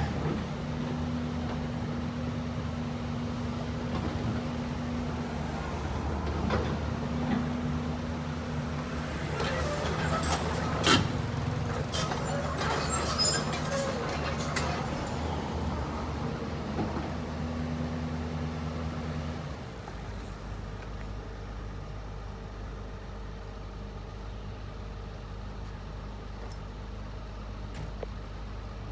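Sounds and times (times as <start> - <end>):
heavy machine engine running: 0.0 - 22.3.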